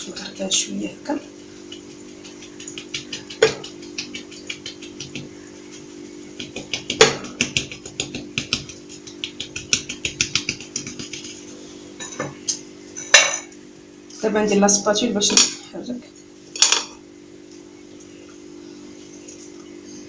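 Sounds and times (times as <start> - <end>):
steady low hum: 0.0 - 20.0
utensil tapping against bowl: 1.7 - 5.3, 6.4 - 11.4.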